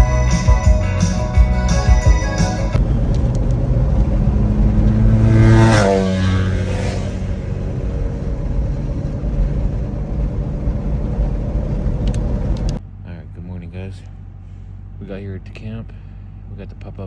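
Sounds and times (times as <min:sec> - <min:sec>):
truck engine shifting gears: 0:00.0 - 0:12.8
road noise: 0:00.0 - 0:17.0.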